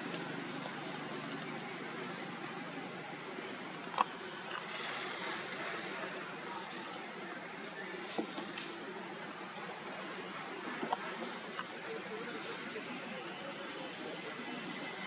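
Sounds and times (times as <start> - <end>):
outdoor background noise: 0.0 - 15.0.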